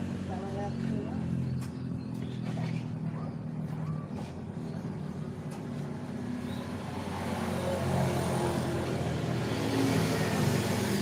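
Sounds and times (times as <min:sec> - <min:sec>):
vehicle engine running: 0:00.0 - 0:07.0.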